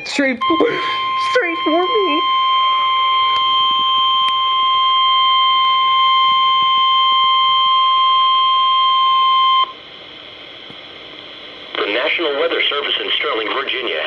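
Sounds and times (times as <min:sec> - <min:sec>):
high steady alarm tone: 0:00.0 - 0:09.8.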